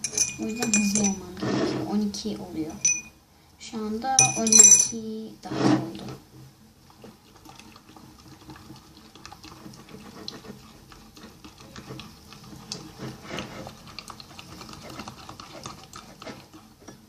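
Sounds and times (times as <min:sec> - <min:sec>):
spoon stirring slime in a bowl: 0:00.0 - 0:02.0, 0:04.2 - 0:05.0, 0:06.8 - 0:17.0.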